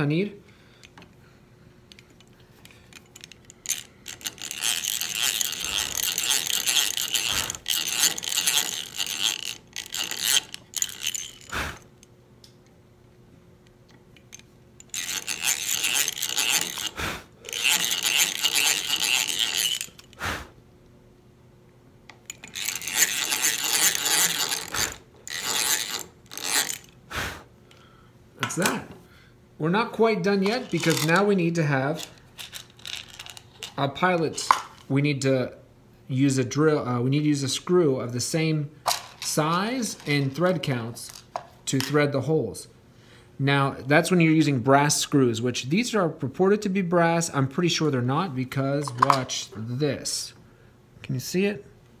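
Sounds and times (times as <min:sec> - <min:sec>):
hand drill gears whirring: 0:02.7 - 0:11.9, 0:14.3 - 0:20.2, 0:22.3 - 0:27.0, 0:30.4 - 0:31.3, 0:32.0 - 0:33.7.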